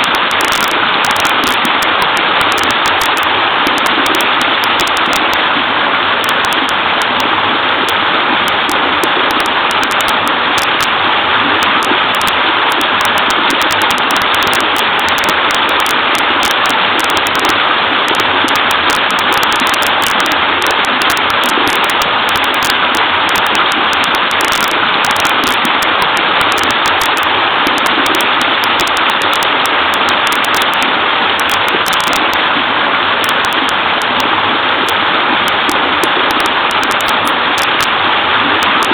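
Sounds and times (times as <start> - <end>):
small waterfall splashing: 0.0 - 38.9.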